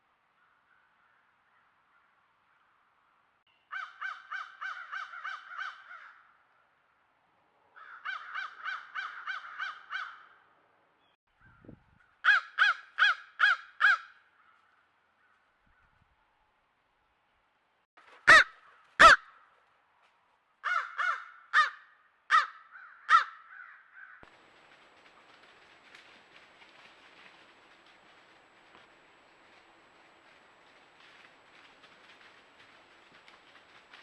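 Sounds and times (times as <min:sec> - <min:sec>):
crows cawing: 0:03.7 - 0:06.3, 0:07.8 - 0:10.3, 0:12.2 - 0:15.4, 0:18.3 - 0:19.5, 0:20.6 - 0:24.3.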